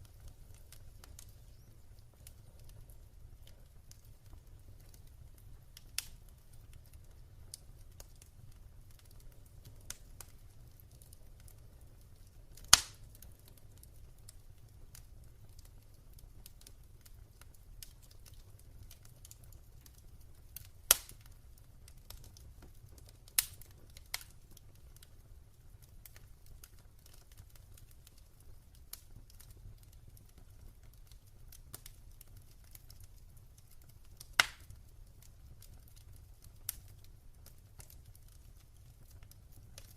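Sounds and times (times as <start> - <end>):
loud sharp pops from fire: 0.0 - 25.1, 25.8 - 39.9
wood fire crackling: 0.0 - 39.9.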